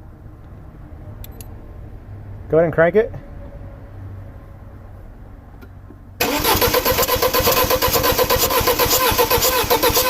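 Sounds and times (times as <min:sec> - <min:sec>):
engine running with rapid pulsing: 0:06.2 - 0:10.0
starter cranking engine: 0:06.2 - 0:10.0.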